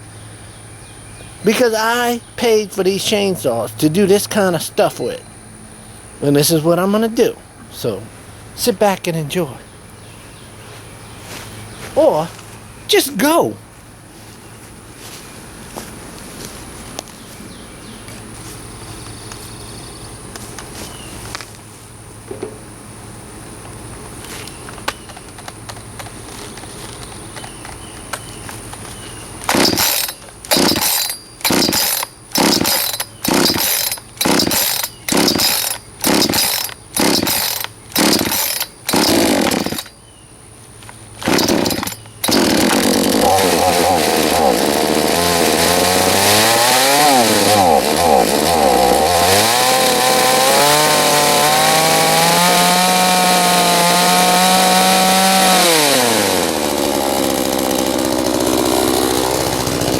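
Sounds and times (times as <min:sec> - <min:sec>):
chainsaw engine revving: 0:29.4 - 0:39.9, 0:41.2 - 0:59.9
starter cord pulls: 0:29.4 - 0:39.9, 0:41.2 - 0:51.6.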